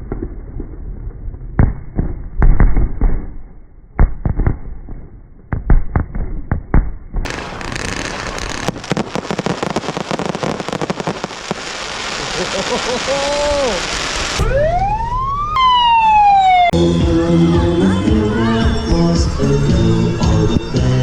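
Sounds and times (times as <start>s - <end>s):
fireworks bangs and booms: 5.5s - 14.4s
fireworks crackling: 7.3s - 14.4s.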